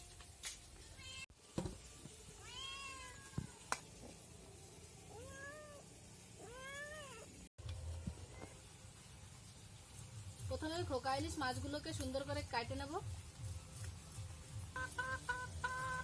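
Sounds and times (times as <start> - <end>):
cat meowing: 2.4 - 3.7, 5.1 - 7.4.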